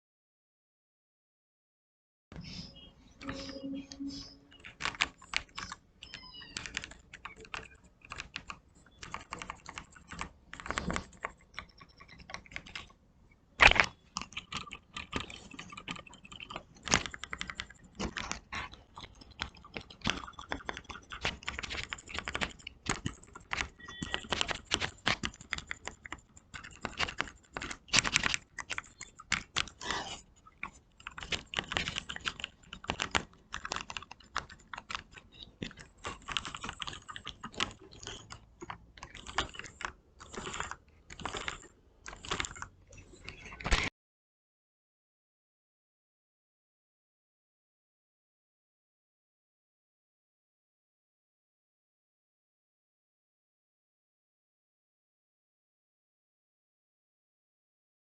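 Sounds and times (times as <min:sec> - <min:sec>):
mechanical keyboard typing: 0:03.2 - 0:13.0, 0:13.6 - 0:43.9.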